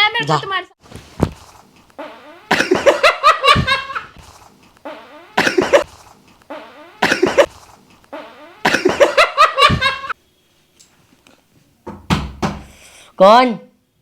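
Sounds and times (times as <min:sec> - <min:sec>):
fart noises: 0:02.0 - 0:09.8.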